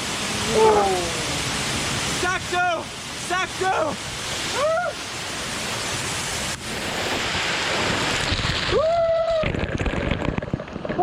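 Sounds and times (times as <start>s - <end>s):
waterfall rushing into pool: 0.0s - 11.0s
person shouting: 0.5s - 1.3s, 4.5s - 5.0s.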